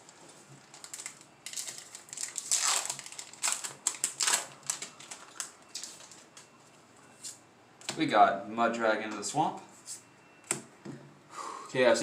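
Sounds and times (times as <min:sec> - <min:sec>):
foil wrapper and cards rustling: 0:00.6 - 0:06.4.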